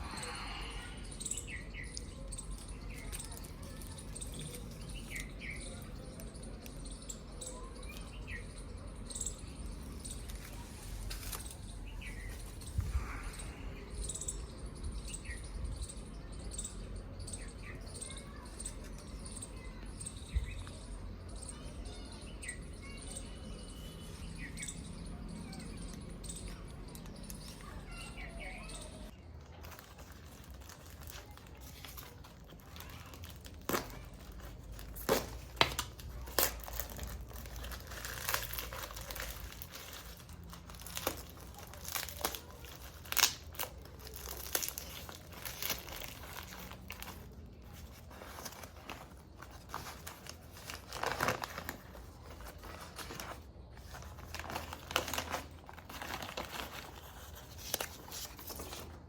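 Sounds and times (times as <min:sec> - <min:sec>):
packaging crumpling and tearing: 0:02.0 - 0:06.7, 0:09.8 - 0:12.9, 0:26.5 - 0:59.0.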